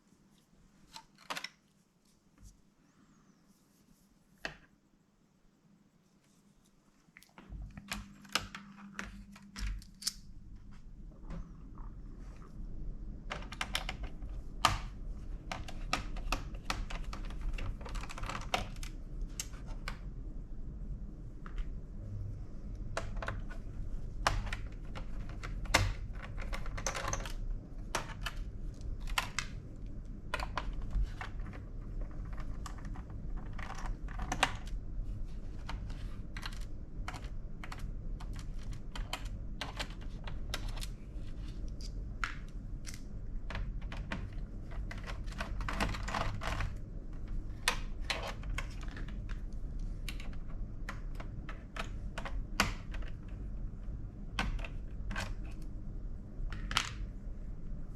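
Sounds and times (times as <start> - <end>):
steady low hum: 2.2 - 57.9
small clicks and taps on plastic: 13.3 - 20.1, 22.8 - 34.8, 41.6 - 55.7.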